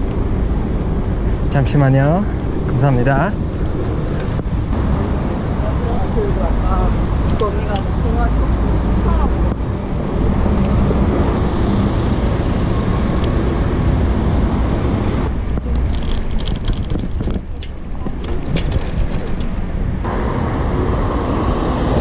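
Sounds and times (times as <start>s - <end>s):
road traffic: 0.0s - 22.0s
wind on microphone: 0.0s - 22.0s
clicks and rattles: 15.5s - 19.7s.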